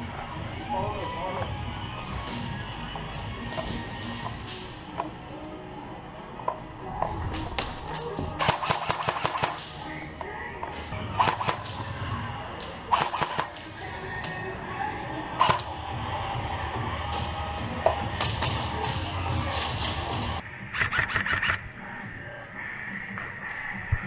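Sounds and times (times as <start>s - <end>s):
airsoft guns firing: 7.6s - 10.0s, 11.1s - 12.2s, 12.9s - 13.9s, 15.4s - 15.8s.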